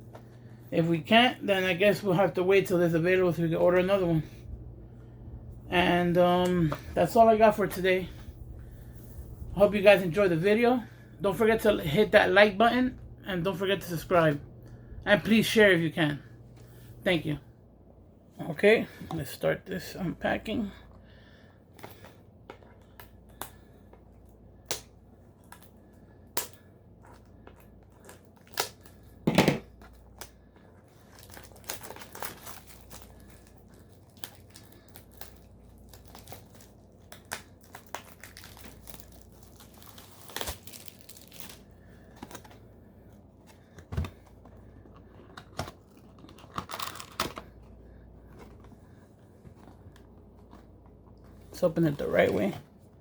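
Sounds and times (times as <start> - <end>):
packaging torn and crinkled: 24.6 - 42.7, 45.3 - 47.7.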